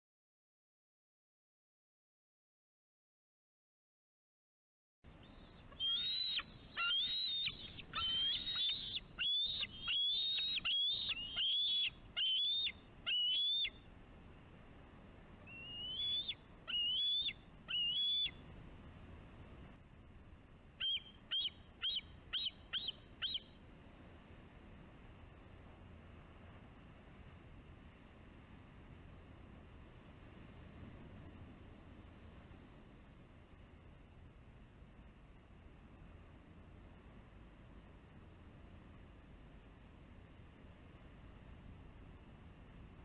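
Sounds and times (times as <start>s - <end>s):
faint steady hiss: 5.1s - 43.0s
eagle whistled calls: 5.2s - 13.8s, 15.4s - 18.4s, 20.8s - 23.6s.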